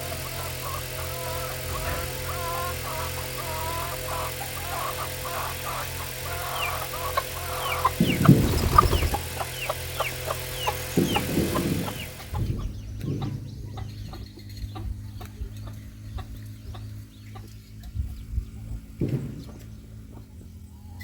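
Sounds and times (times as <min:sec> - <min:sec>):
high falling peeps: 0:00.0 - 0:13.0
chickens clucking: 0:00.0 - 0:21.0.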